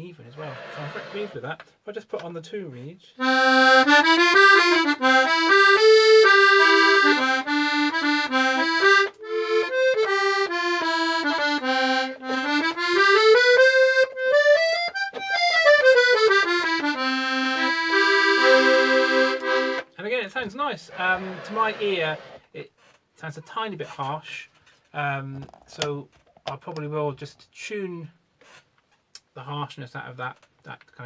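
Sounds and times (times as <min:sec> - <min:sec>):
accordion melody: 0:00.4 - 0:01.4, 0:03.2 - 0:19.9, 0:20.9 - 0:22.4.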